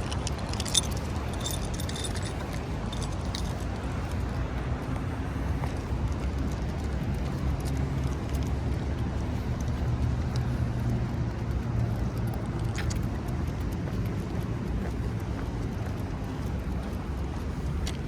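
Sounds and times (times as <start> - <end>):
car engine hum: 0.0 - 18.0
road traffic rumble: 0.0 - 18.0.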